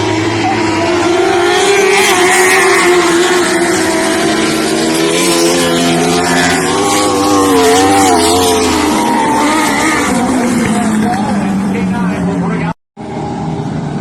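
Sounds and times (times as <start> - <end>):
racing car engines passing: 0.0 - 14.0.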